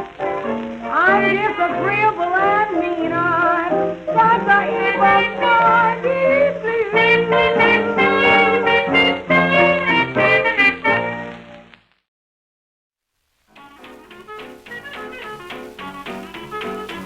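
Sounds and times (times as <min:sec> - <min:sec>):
horn solo with sliding notes: 0:13.6 - 0:17.0
jazz band accompaniment: 0:13.6 - 0:17.0.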